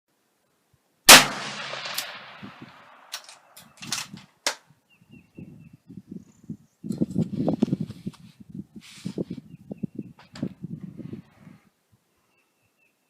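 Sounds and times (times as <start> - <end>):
rifle shot with echo: 1.1 - 3.2.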